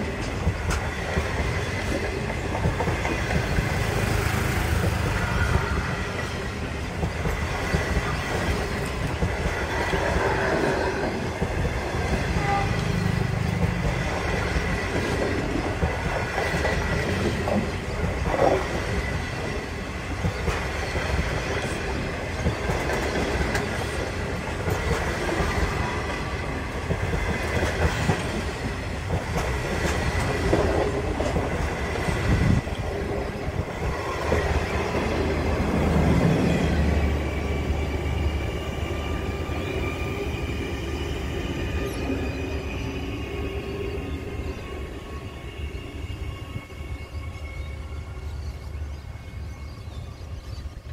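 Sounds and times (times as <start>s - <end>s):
clickety-clack over rail joints: 0.0s - 38.5s
train wheels rumbling on track: 0.0s - 50.9s.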